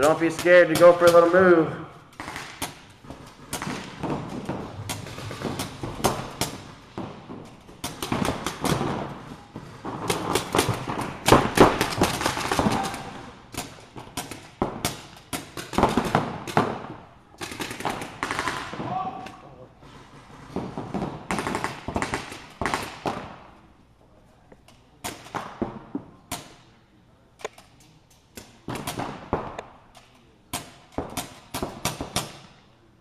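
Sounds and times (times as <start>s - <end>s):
paintball markers firing: 0.0s - 9.1s.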